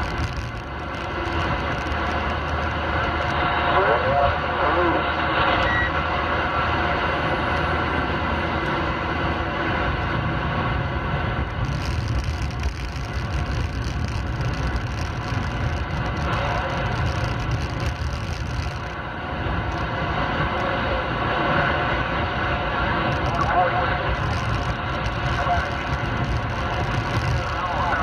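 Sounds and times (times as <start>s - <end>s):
radio static hiss: 0.0s - 6.6s, 11.6s - 28.0s
road and tyre noise: 0.0s - 28.0s.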